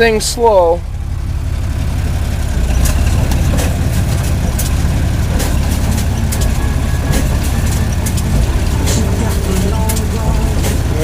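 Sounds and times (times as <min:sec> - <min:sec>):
tractor diesel engine under load: 0:00.0 - 0:11.0
baler machinery clicks and clatters: 0:01.8 - 0:11.0.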